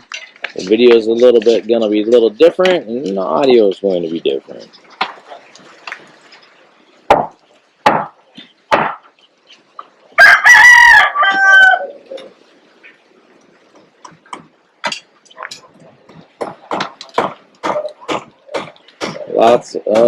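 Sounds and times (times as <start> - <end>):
rooster crowing: 10.2 - 12.2.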